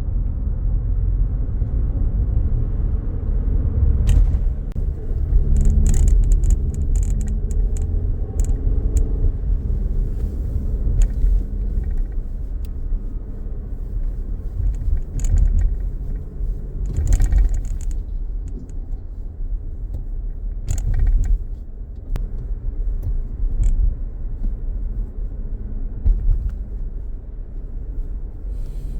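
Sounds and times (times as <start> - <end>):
car engine low rumble: 0.0 - 28.9
sharp clicks and rattles: 4.1 - 24.6.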